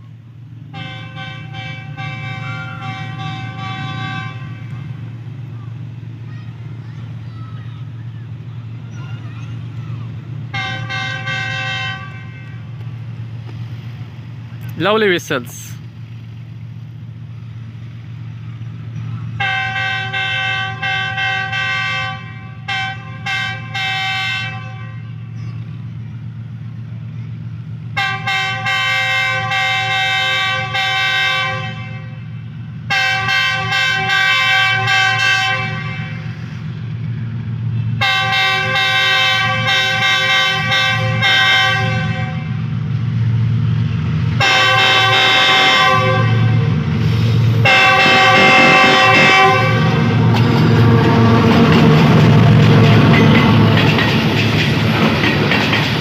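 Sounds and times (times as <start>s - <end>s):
train rumble: 0.0s - 56.0s
locomotive horn blasts and toots: 0.7s - 5.1s, 10.5s - 12.8s, 19.3s - 25.4s, 27.9s - 36.6s, 38.0s - 42.7s, 44.4s - 54.1s.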